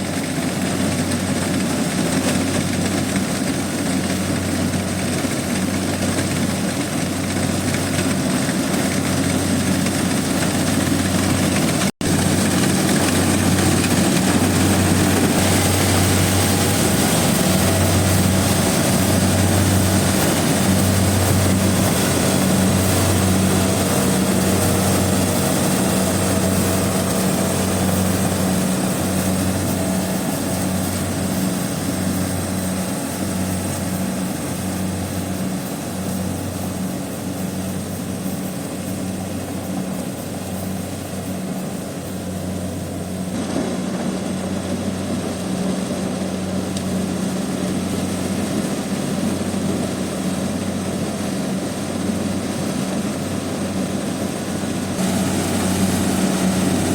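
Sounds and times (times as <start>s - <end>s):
combine harvester engine droning: 0.0s - 56.9s
high hiss: 55.0s - 56.9s.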